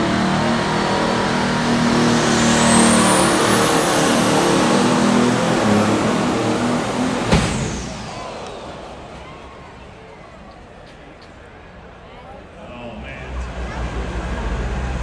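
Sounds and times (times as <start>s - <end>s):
tractor engine under load: 0.0s - 8.4s, 12.9s - 15.0s.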